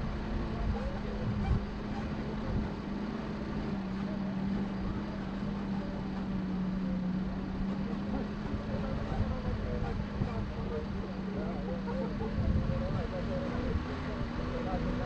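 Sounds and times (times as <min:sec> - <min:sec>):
vehicle engine running: 0:00.0 - 0:15.0.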